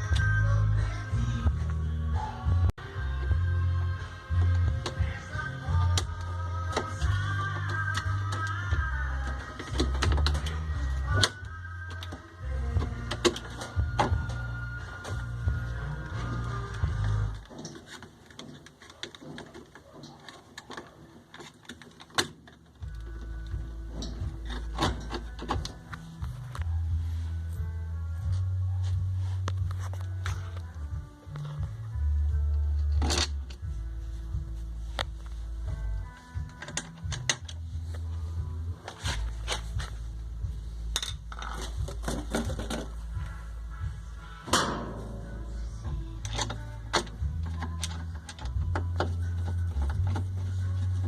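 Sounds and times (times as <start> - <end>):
tools and metal parts clicking: 16.7 - 26.6, 32.5 - 33.7, 36.4 - 37.6, 40.9 - 43.2, 46.2 - 51.0.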